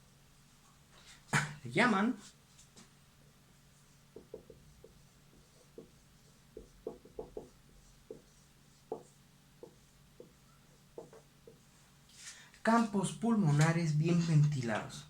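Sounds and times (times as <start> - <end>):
handwriting taps and strokes: 3.7 - 11.8.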